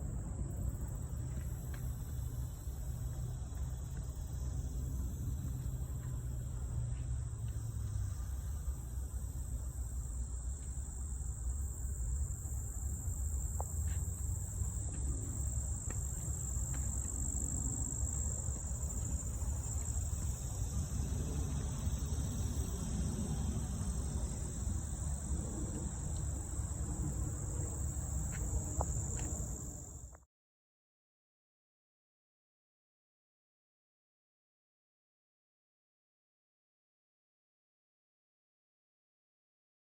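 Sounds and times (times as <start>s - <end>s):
high-pitched insect chorus: 0.0s - 30.2s.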